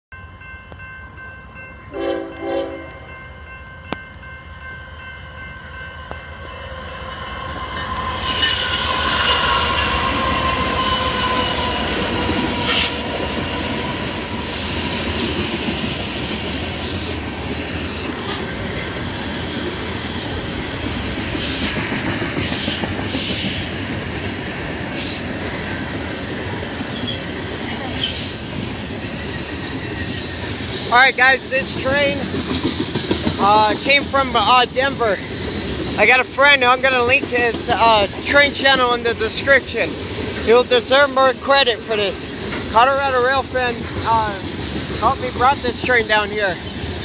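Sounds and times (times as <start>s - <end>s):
train rumble and rail clatter: 0.1s - 47.0s
locomotive horn: 1.9s - 3.1s.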